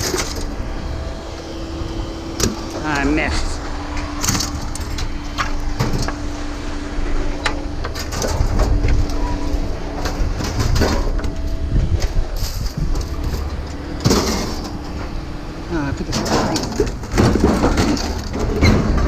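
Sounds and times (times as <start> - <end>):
vehicle engine running: 0.0 - 19.0
knocks and clanks of items: 12.0 - 14.8, 16.1 - 19.0.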